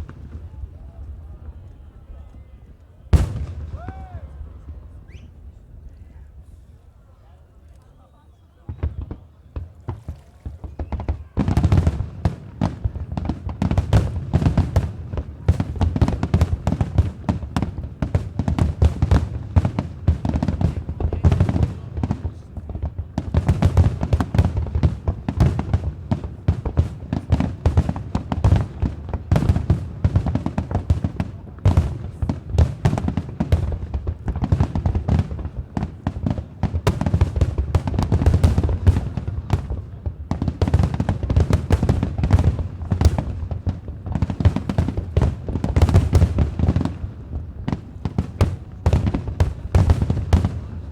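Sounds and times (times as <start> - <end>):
fireworks bursting: 0.0 - 2.2, 3.1 - 5.9, 8.6 - 50.9.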